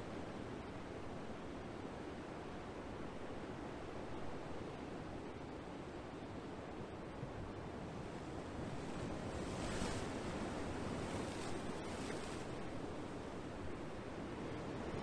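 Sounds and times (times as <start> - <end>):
ocean waves washing ashore: 7.7 - 15.0.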